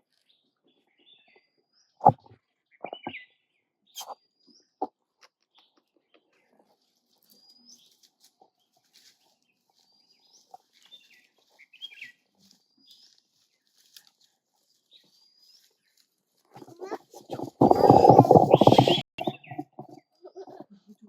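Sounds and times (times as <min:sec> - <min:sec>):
bird chirps: 0:02.8 - 0:03.4, 0:04.0 - 0:04.7.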